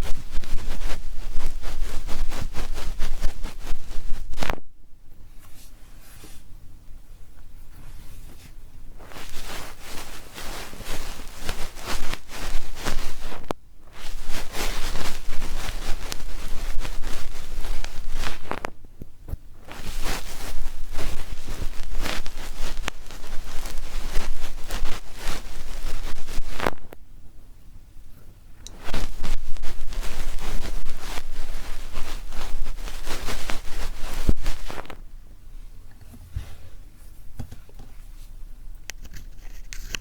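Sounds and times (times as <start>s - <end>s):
ear pick scraping microphone: 0.0s - 4.6s, 9.0s - 18.7s, 19.6s - 27.0s, 28.7s - 35.0s.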